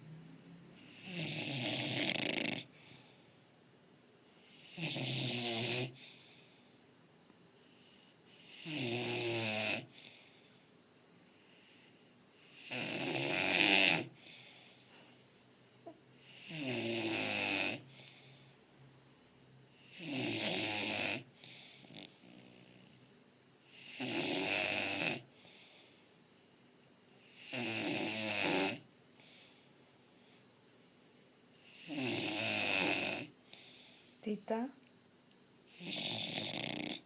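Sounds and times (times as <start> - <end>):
dog snoring: 0.8 - 3.1, 4.4 - 6.6, 7.6 - 10.6, 11.4 - 14.8, 16.2 - 18.4, 19.7 - 23.0, 23.6 - 26.0, 27.2 - 30.4, 31.6 - 34.0, 35.7 - 37.0.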